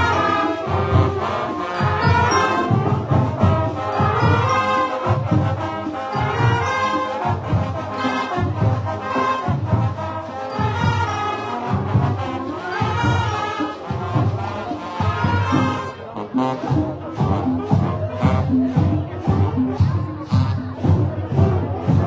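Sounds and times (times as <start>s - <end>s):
brass band playing: 0.0s - 22.0s
bass drum beat: 16.7s - 22.0s.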